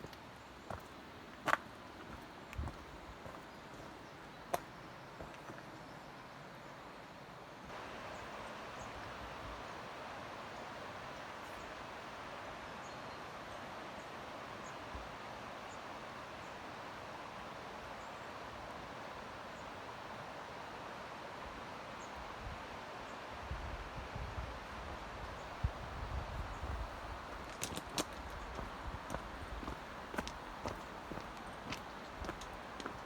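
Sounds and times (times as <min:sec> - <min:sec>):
rushing mountain water: 0:07.7 - 0:33.0.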